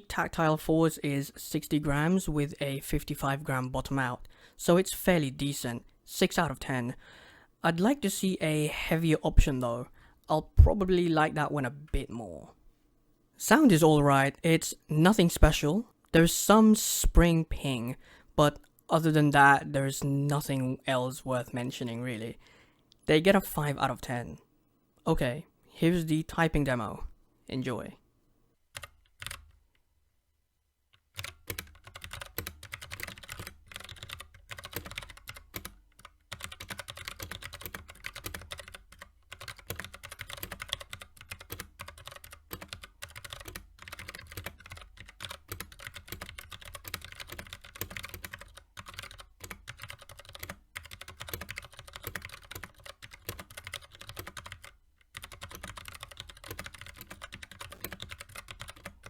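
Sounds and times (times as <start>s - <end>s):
mechanical keyboard typing: 28.7s - 29.6s, 31.0s - 59.0s.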